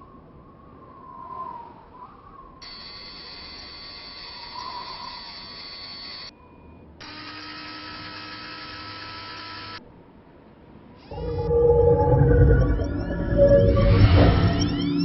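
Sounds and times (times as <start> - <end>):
small motorised mechanism running: 7.0 - 9.8.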